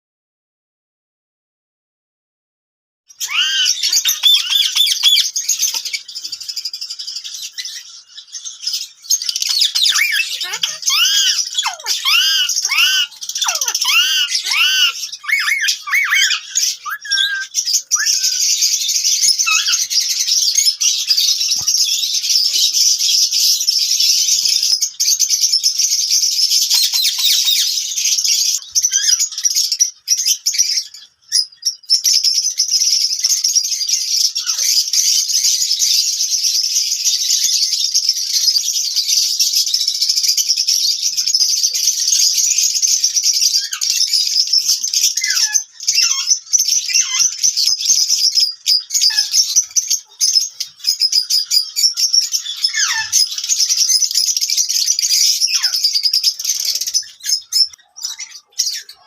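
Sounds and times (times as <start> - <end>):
birds chattering and squawking: 3.1 - 59.0
bird calls rising and falling: 3.2 - 22.7.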